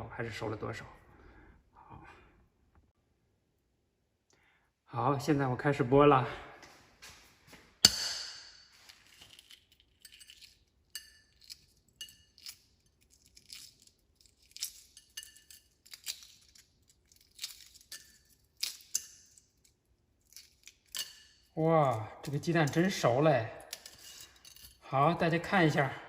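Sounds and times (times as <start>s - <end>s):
egg shell cracking: 7.8s - 22.9s
egg shell crackles being peeled: 8.7s - 23.0s.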